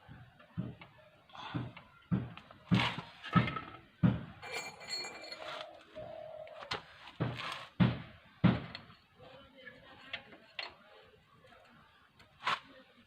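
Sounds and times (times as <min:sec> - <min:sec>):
short metallic ring: 0:04.4 - 0:05.6.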